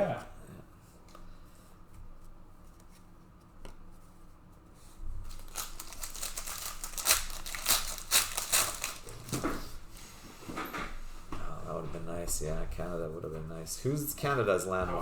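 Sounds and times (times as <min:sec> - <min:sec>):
plastic wrapper tearing and crinkling: 0:05.2 - 0:09.6.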